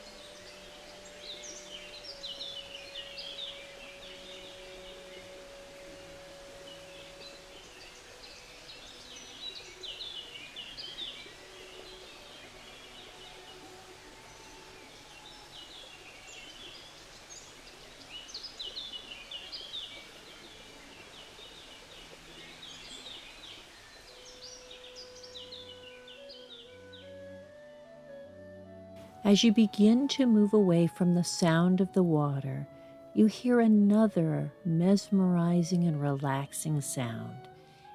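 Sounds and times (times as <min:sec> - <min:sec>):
brook water flowing: 0:00.0 - 0:27.2
songbirds chirping: 0:00.0 - 0:37.9.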